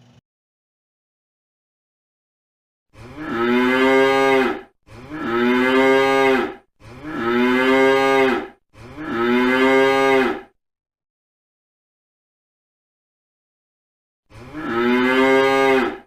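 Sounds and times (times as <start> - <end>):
cow mooing: 3.0 - 10.6, 14.3 - 16.0.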